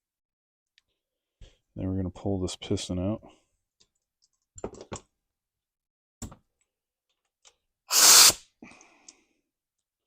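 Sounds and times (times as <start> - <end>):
air blow gun blast: 7.9 - 8.4.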